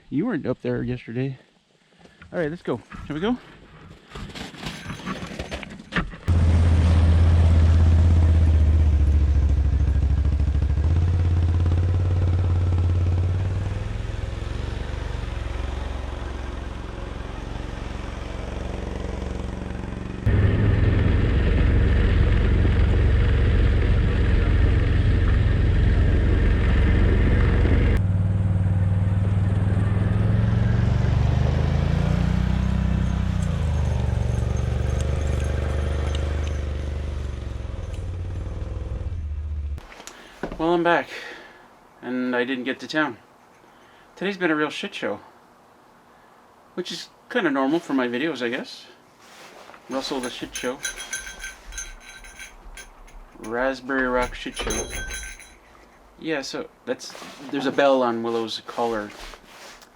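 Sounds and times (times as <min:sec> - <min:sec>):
atv engine droning: 0:06.3 - 0:39.8.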